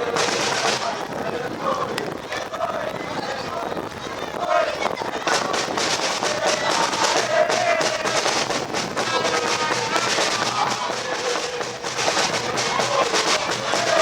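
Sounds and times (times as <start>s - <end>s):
music with drum beat: 0.0s - 1.0s, 5.3s - 14.0s.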